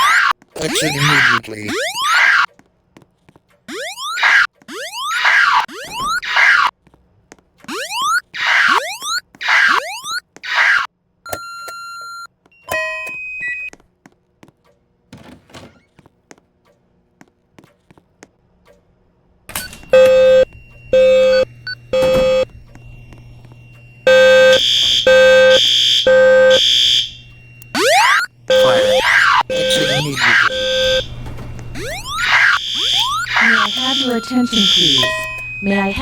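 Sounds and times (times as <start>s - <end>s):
electronic beeps: 0.0s - 2.5s, 3.7s - 6.7s, 7.7s - 13.7s, 19.6s - 36.0s
fire alarm horn pulses: 19.6s - 36.0s.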